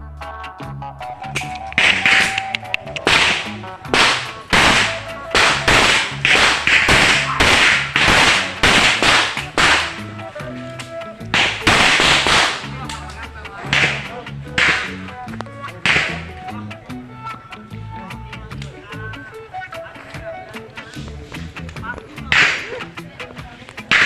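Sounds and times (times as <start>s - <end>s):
rapid pistol shots: 1.8s - 2.4s, 3.0s - 10.0s, 11.4s - 12.8s, 13.7s - 15.0s, 15.9s - 16.3s, 22.3s - 22.7s.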